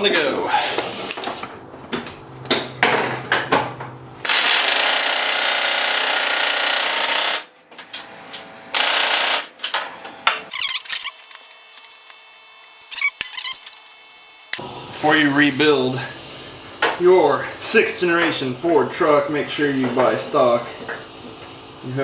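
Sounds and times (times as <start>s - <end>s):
air impact wrench hammering: 4.2s - 10.5s.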